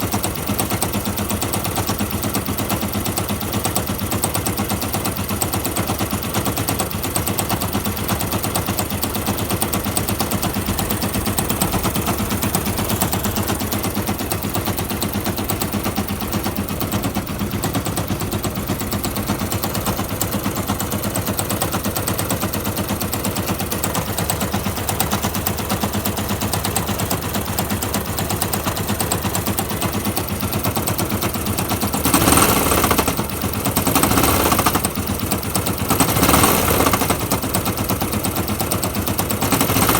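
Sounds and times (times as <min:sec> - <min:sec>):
engine knocking rapidly: 0:00.0 - 0:39.9.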